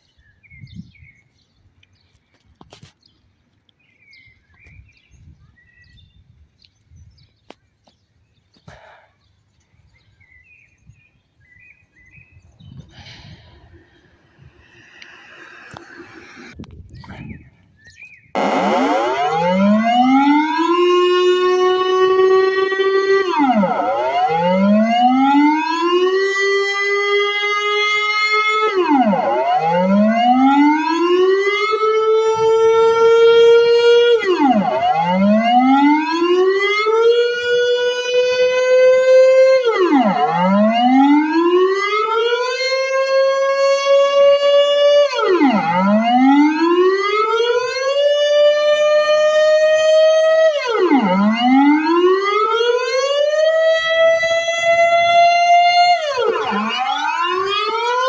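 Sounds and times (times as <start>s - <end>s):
air raid siren wailing: 13.1s - 16.7s, 18.3s - 58.0s.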